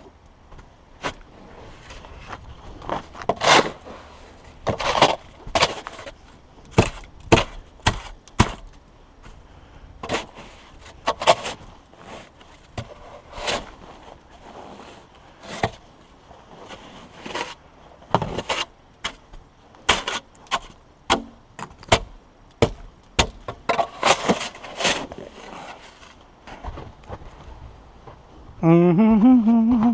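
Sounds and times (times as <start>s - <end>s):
shovel scraping packed snow: 1.4s - 6.1s, 10.0s - 15.8s, 16.4s - 17.6s, 18.2s - 19.2s, 19.9s - 20.7s, 23.8s - 26.2s.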